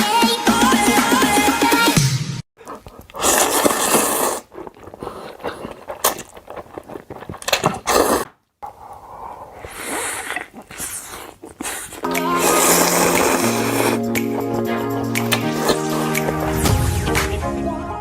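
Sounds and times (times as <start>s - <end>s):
close crunching and chewing: 2.6s - 8.3s, 9.5s - 16.8s.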